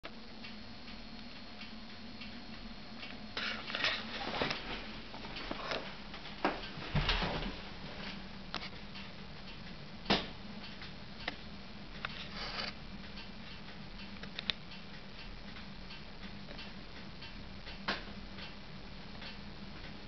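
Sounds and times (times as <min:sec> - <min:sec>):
steady low hum: 0:00.0 - 0:20.0
wood stove clicks and pops: 0:08.5 - 0:14.7, 0:16.0 - 0:19.4.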